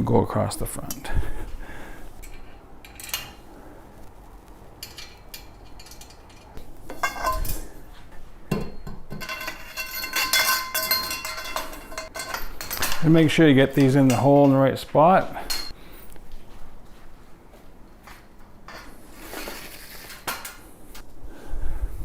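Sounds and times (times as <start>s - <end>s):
metal parts clinking: 4.8s - 7.7s, 8.7s - 14.6s.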